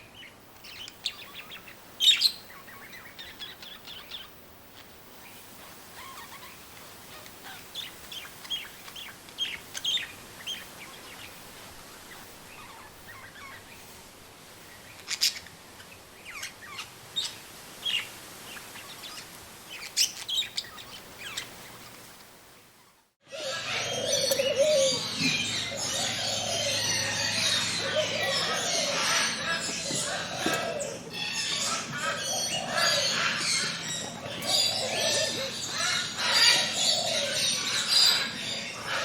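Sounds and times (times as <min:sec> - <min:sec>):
soft steady hiss: 0:00.0 - 0:39.0
songbirds chirping: 0:00.0 - 0:39.0.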